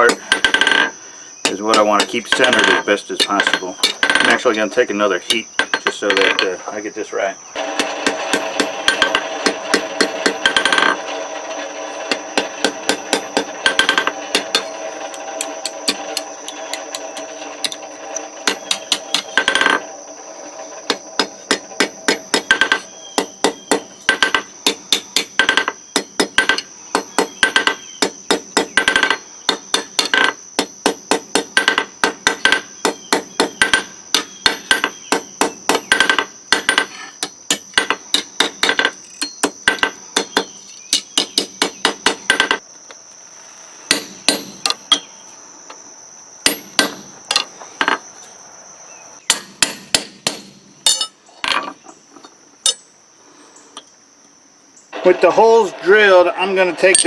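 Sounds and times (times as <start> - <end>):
hammer striking steel on anvil: 49.3 - 51.2.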